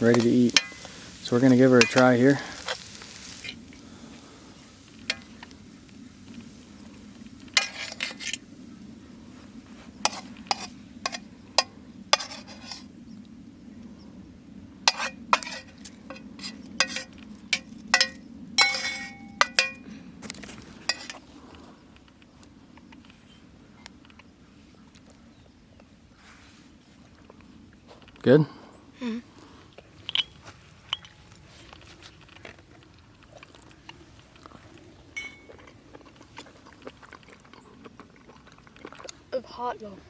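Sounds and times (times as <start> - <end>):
steady low hum: 0.0 - 24.6
metal cutlery clinking on dishes: 14.9 - 19.8.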